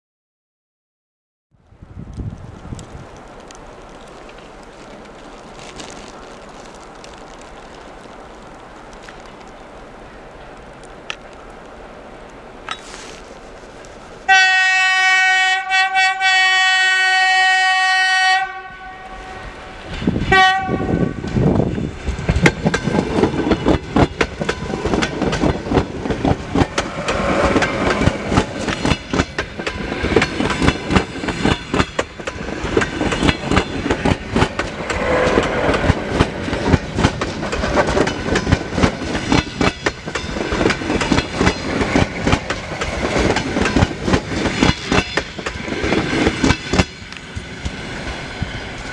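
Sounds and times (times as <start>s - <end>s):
electric train horn blasts: 14.3s - 19.7s, 20.3s - 21.3s
train wheels clattering over rail joints: 21.2s - 48.9s.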